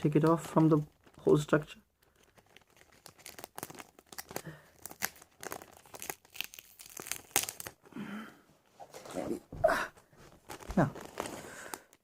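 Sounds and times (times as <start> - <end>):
foam crackling and tearing: 0.0 - 7.8.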